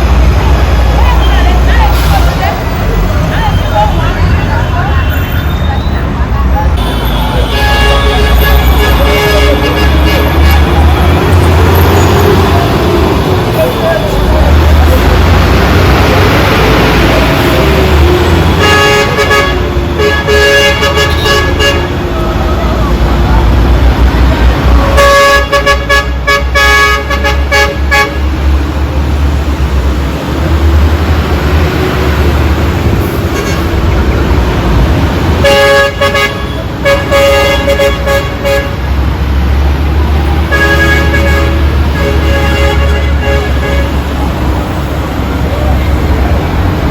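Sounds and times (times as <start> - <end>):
street traffic rumble: 0.0 - 46.9
vehicle horn: 6.8 - 10.9, 18.5 - 22.0, 24.9 - 28.2, 35.4 - 38.9, 40.5 - 44.1.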